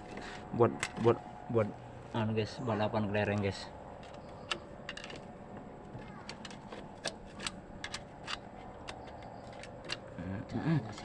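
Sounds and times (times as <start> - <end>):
metal tools clicking and tapping: 6.3 - 10.2.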